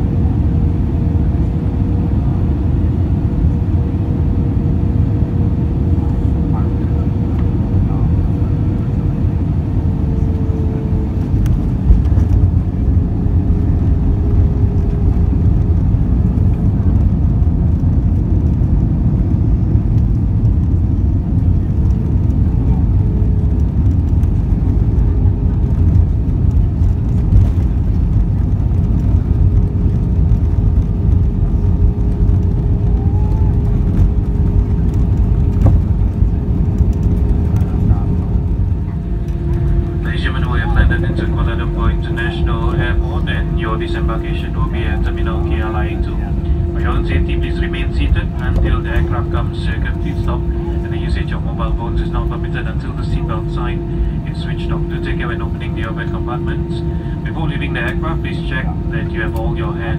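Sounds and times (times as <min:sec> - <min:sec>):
jet engine cabin rumble: 0:00.0 - 0:59.9
wavering engine tone: 0:28.9 - 0:59.9.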